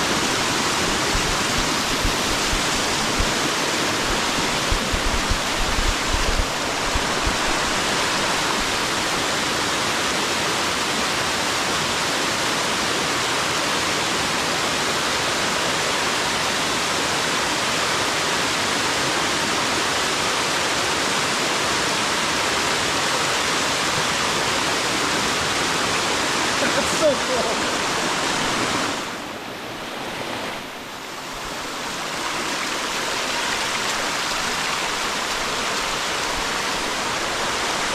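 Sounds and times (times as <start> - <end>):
waterfall rushing: 0.0 - 37.9
thumps on microphone: 0.9 - 7.6.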